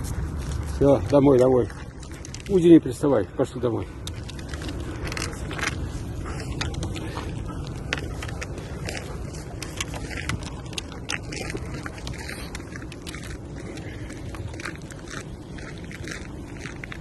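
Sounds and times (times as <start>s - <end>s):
crunching and snapping clicks: 4.0s - 17.0s.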